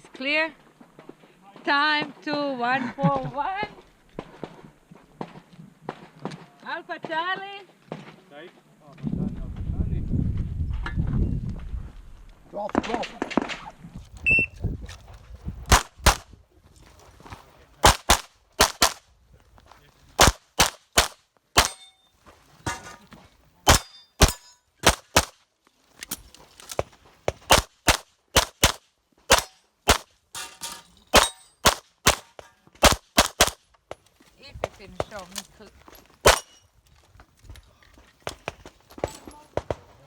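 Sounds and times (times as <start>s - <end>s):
pistol shots: 15.7s - 16.2s, 17.8s - 19.0s, 20.2s - 21.9s, 23.7s - 25.3s, 27.4s - 30.1s, 31.1s - 33.6s, 36.2s - 36.6s
faint metallic ring: 21.8s - 23.0s.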